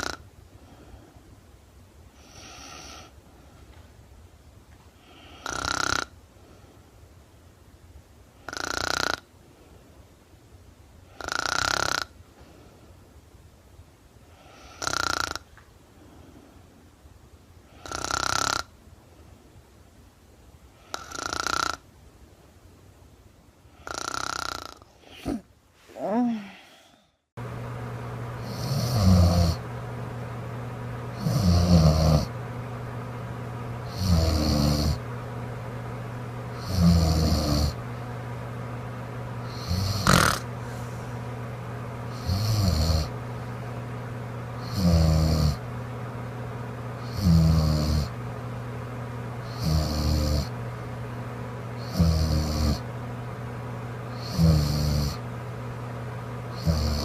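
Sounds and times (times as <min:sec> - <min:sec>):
woman snoring: 0:00.0 - 0:00.2, 0:02.2 - 0:03.2, 0:05.0 - 0:06.2, 0:08.4 - 0:09.3, 0:11.1 - 0:12.2, 0:14.4 - 0:15.5, 0:17.7 - 0:18.7, 0:20.8 - 0:21.8, 0:23.7 - 0:25.4, 0:26.0 - 0:27.1, 0:28.4 - 0:29.6, 0:31.1 - 0:32.4, 0:33.8 - 0:35.0, 0:36.5 - 0:37.8, 0:39.4 - 0:40.8, 0:42.1 - 0:43.2, 0:44.6 - 0:45.7, 0:47.0 - 0:48.2, 0:49.4 - 0:50.6, 0:51.8 - 0:52.9, 0:54.1 - 0:55.2, 0:56.5 - 0:57.0
constant low hum: 0:24.9 - 0:57.0.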